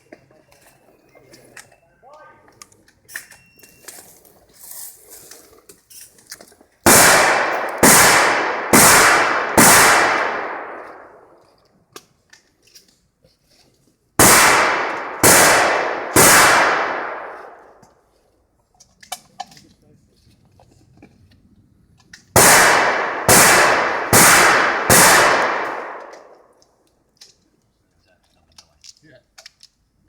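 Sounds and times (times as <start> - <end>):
shotgun shots: 6.9 - 11.3, 14.2 - 17.8, 22.4 - 26.5.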